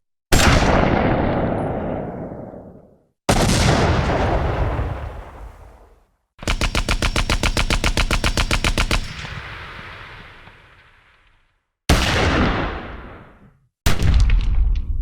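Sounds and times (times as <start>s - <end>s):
heavy gunshot with echo: 3.3s - 5.9s, 11.9s - 14.8s
automatic gunfire burst: 6.4s - 9.4s.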